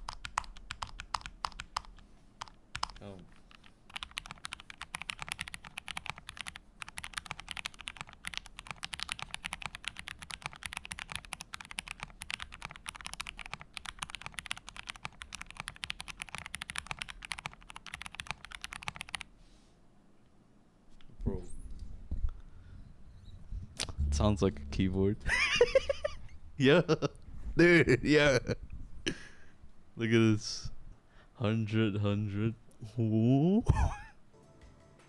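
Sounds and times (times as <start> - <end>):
fast mechanical keyboard typing: 0.0 - 19.3.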